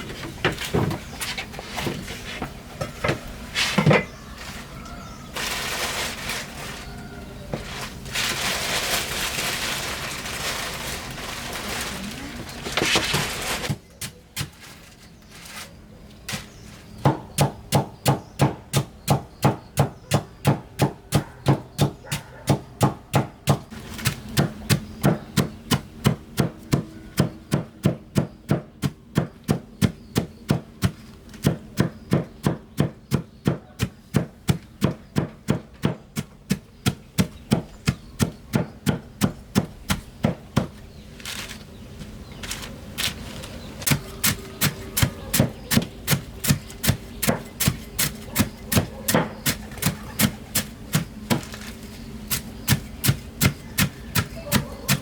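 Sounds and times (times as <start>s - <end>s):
rough rustling: 0.0s - 17.1s, 29.2s - 55.0s.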